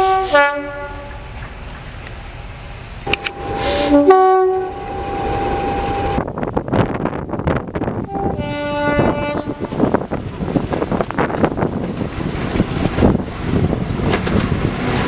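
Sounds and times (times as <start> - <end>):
locomotive whistle blasts: 0.0 - 1.3, 3.1 - 6.2
train rhythmic beating: 0.0 - 15.0
loud hiss: 1.0 - 4.2.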